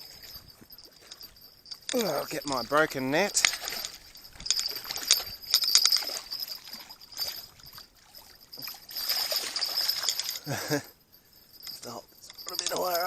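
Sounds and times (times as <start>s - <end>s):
water splashing: 1.9s - 10.4s.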